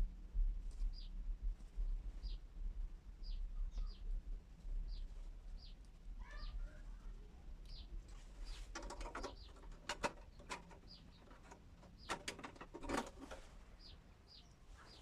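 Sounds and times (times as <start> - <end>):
bird chirping: 0.9 - 1.2, 3.2 - 4.1, 4.9 - 7.0, 7.6 - 15.0
sheet metal rattling and clicking: 8.7 - 13.5.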